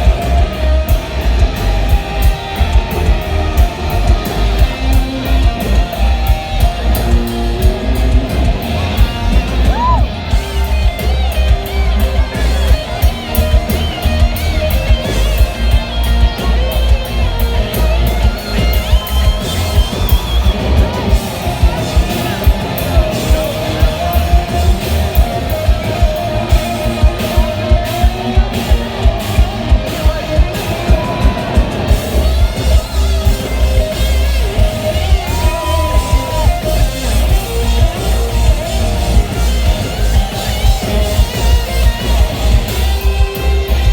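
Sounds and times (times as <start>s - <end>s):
electric guitars: 0.0s - 43.9s
heavy drum beat: 0.0s - 43.9s.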